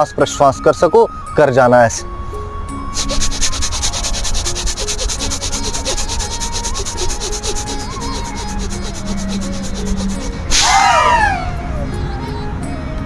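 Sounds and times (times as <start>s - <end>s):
rapid forceful breathing: 2.9s - 10.8s.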